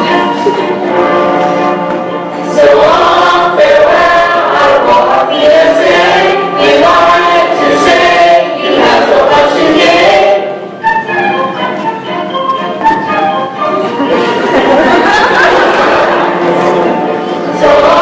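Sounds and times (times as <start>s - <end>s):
choir singing: 0.0s - 11.0s, 13.6s - 18.0s
musical accompaniment: 0.0s - 18.0s.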